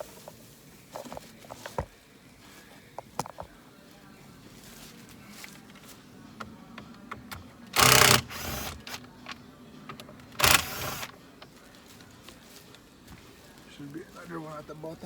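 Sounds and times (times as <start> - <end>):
power screwdriver whirring: 7.8 - 9.0, 10.2 - 11.1.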